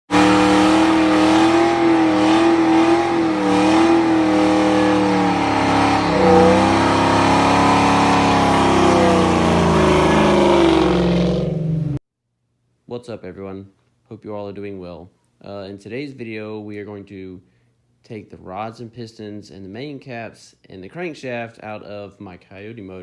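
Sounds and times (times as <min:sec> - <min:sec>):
car engine revving: 0:00.0 - 0:12.0.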